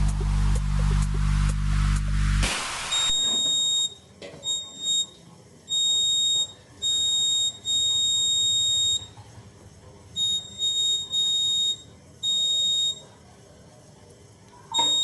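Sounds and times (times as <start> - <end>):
alarm buzzer beeping: 2.9 - 9.2, 10.2 - 13.1, 14.8 - 15.0.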